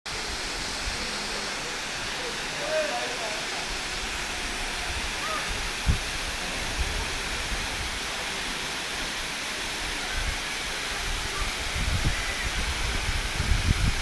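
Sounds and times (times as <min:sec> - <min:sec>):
waterfall rushing: 0:00.1 - 0:14.0.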